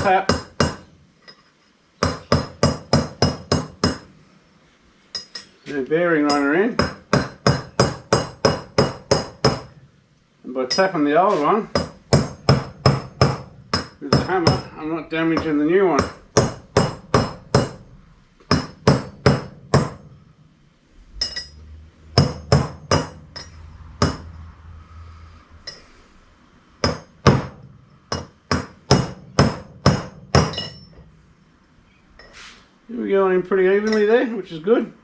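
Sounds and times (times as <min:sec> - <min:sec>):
hammer tapping on metal: 0:00.0 - 0:04.1, 0:06.2 - 0:09.8, 0:11.7 - 0:17.9, 0:18.5 - 0:20.2, 0:22.2 - 0:24.4, 0:26.8 - 0:31.1.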